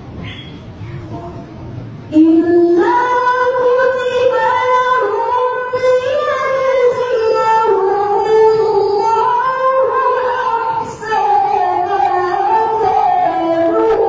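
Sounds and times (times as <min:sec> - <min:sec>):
woman singing slow melody: 0:02.1 - 0:14.0.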